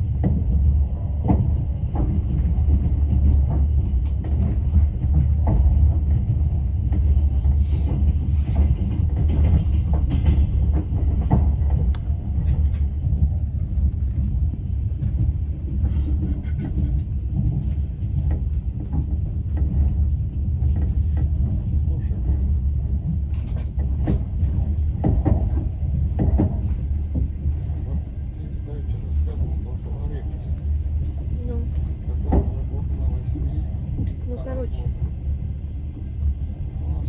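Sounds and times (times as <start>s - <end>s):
train wheels rumbling on rails: 0.0s - 37.0s
knocks and clatter: 0.1s - 28.4s.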